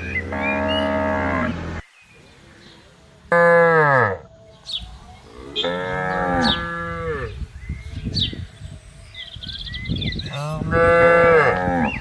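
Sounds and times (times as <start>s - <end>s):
cows mooing: 0.0s - 1.8s, 3.3s - 4.3s, 5.2s - 7.4s, 10.3s - 12.0s.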